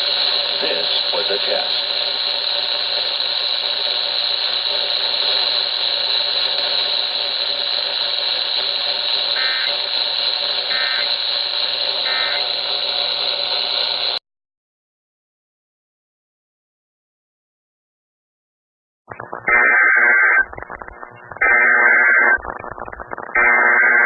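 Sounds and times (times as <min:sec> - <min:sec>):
faint hum: 0:00.0 - 0:14.2
radio static: 0:00.0 - 0:14.2, 0:19.1 - 0:24.0
warbling data bursts: 0:00.0 - 0:14.2, 0:19.1 - 0:24.0.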